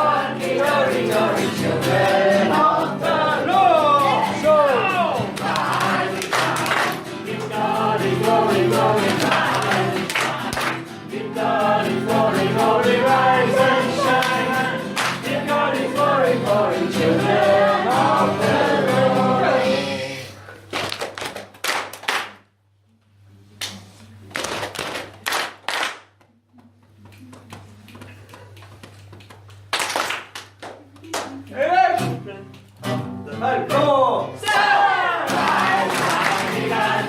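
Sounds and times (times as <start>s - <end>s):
group singing in unison: 0.0s - 20.4s, 34.4s - 37.0s
people clapping: 4.0s - 11.0s, 13.4s - 16.1s, 20.6s - 22.5s, 23.6s - 31.5s, 34.4s - 37.0s.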